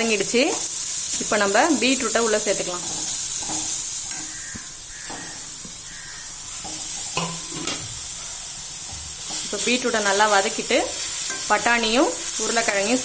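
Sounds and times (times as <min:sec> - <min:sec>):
vegetables sizzling in oil: 0:00.0 - 0:13.0
spatula scraping and knocking pan: 0:02.8 - 0:08.0.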